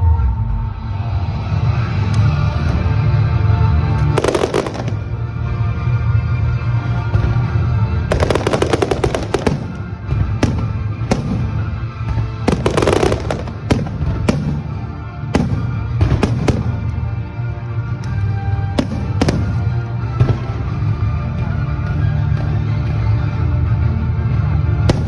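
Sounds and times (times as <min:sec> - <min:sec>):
background music: 0:00.0 - 0:25.0
fireworks crackling: 0:04.1 - 0:05.4, 0:08.1 - 0:17.0, 0:18.2 - 0:20.5
fireworks bangs: 0:04.2 - 0:05.2, 0:08.1 - 0:17.0, 0:18.8 - 0:20.7.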